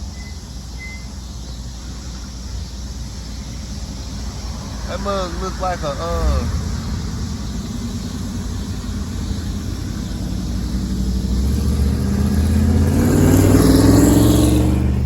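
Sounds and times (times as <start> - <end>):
vehicle engine accelerating: 3.7 - 15.0.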